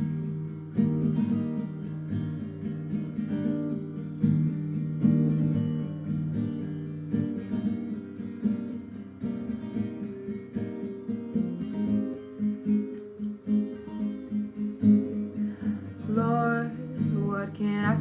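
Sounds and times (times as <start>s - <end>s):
acoustic guitar strumming chords: 0.0s - 18.0s.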